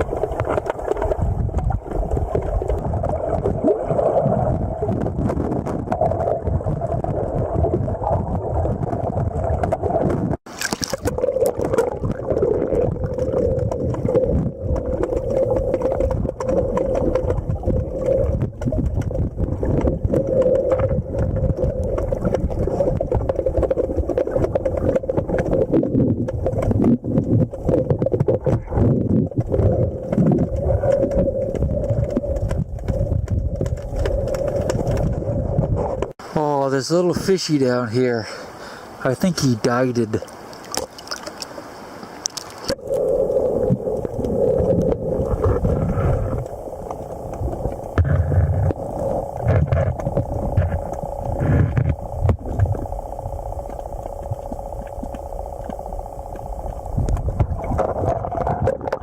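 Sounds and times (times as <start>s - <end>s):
crackling clicks: 0.0s - 8.2s, 8.8s - 36.2s, 40.2s - 59.0s
underwater rumble of moving water: 0.0s - 59.0s
steady hum: 42.7s - 59.0s.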